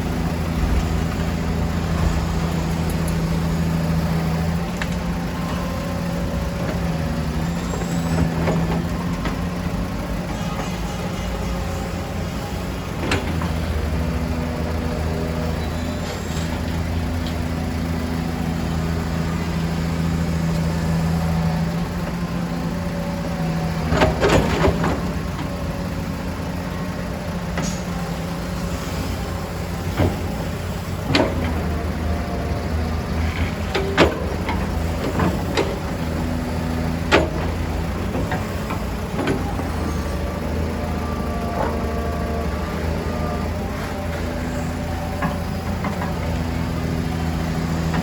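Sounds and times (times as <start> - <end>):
diesel engine running: 0.0 - 48.0.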